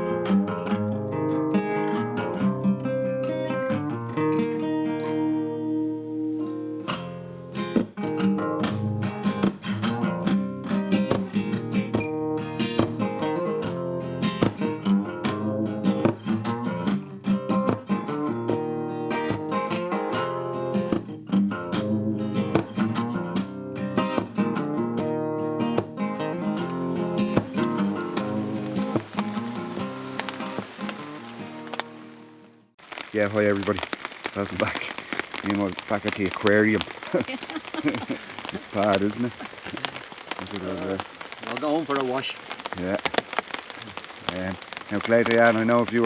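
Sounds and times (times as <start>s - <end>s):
acoustic guitar strumming: 0.0s - 32.7s.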